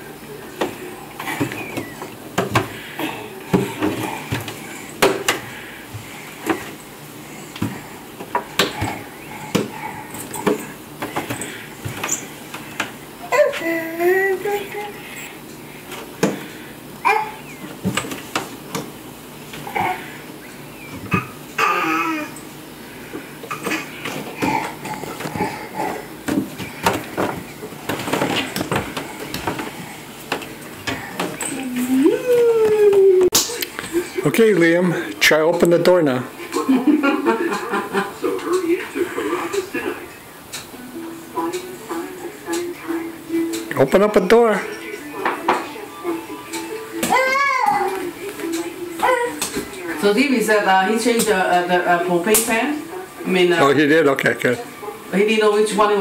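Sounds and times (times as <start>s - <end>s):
hands and feet thumping on stairs: 7.5s - 13.6s, 23.6s - 34.0s
household objects clattering: 23.5s - 31.9s.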